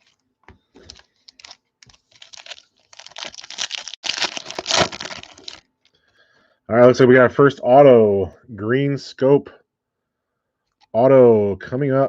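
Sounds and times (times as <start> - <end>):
card pack wrapper tearing and crinkling: 0.8 - 5.7.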